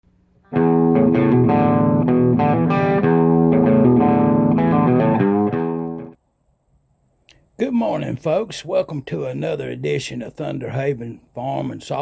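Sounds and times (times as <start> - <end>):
guitar playing chords: 0.4 - 6.2.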